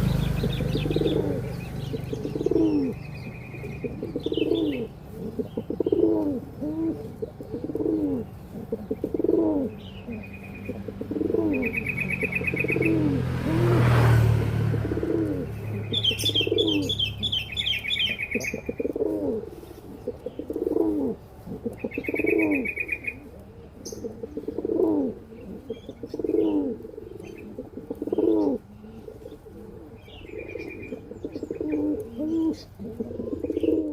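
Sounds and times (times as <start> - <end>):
pigeons cooing: 0.0 - 33.9
small birds chirping trills: 0.0 - 33.9.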